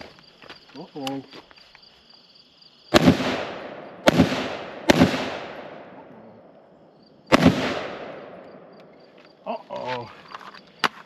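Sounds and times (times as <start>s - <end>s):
rifle shots echoing: 2.9s - 6.2s, 7.3s - 8.7s.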